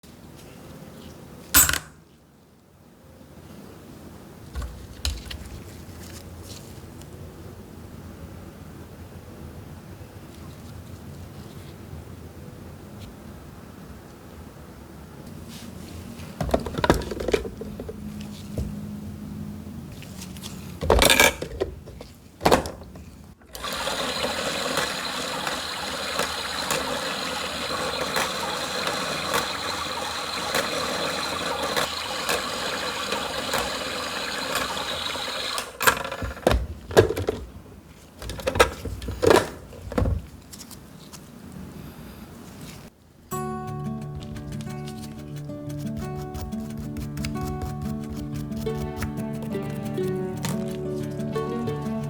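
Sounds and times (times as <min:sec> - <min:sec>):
tools knocking and clattering: 0:16.4 - 0:18.8, 0:35.8 - 0:37.6
rotary tool whining: 0:23.5 - 0:36.4
coin being handled: 0:43.5 - 0:46.8.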